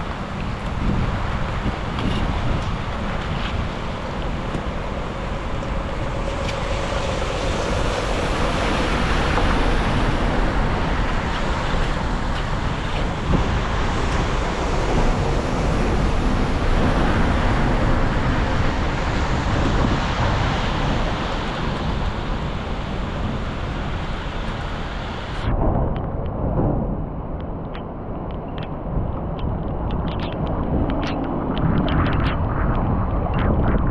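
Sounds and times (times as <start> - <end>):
floodwater rushing through culvert: 0.0 - 25.5
wind buffeting microphone: 0.0 - 33.9.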